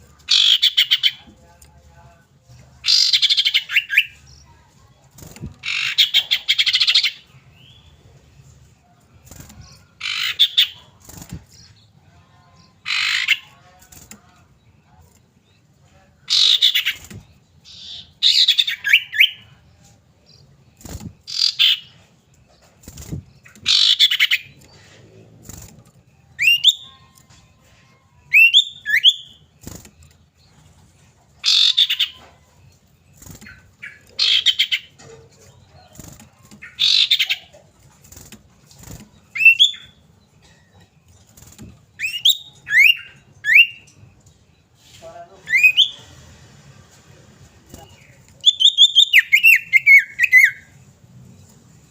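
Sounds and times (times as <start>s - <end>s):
bird harsh chattering: 0.3s - 1.2s, 5.6s - 7.2s, 10.0s - 11.0s, 12.8s - 13.5s, 16.3s - 17.0s, 21.2s - 22.0s, 23.4s - 24.6s, 31.4s - 32.2s, 33.4s - 35.0s, 36.6s - 37.6s.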